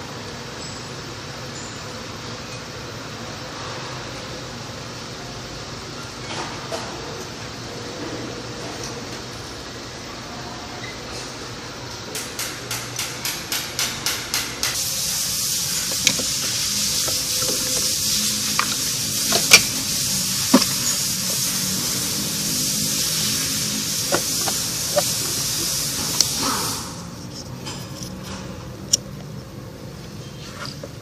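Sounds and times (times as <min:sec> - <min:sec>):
steady hissing: 0:12.4 - 0:27.5.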